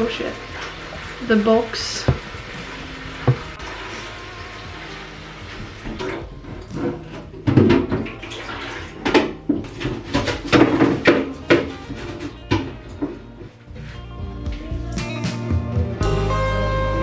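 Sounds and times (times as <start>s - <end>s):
knocks and clatter of items handled: 8.8s - 13.3s.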